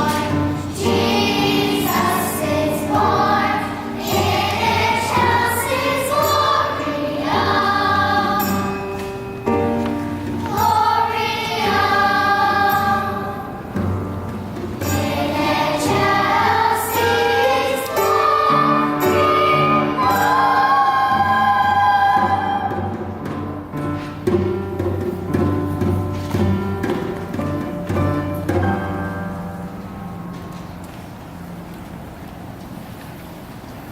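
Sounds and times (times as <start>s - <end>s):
church choir singing: 0.0s - 13.8s, 14.8s - 23.1s.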